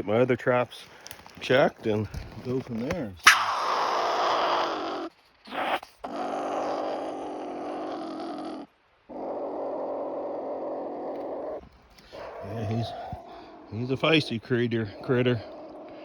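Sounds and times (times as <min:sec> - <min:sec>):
pine marten growling: 0:02.1 - 0:16.0.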